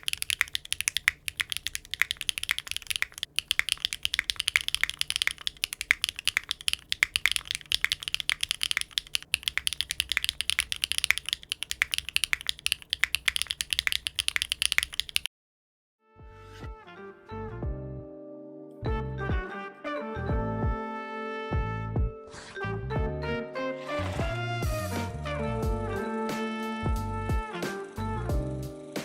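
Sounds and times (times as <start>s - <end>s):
mechanical keyboard typing: 0.0s - 15.3s.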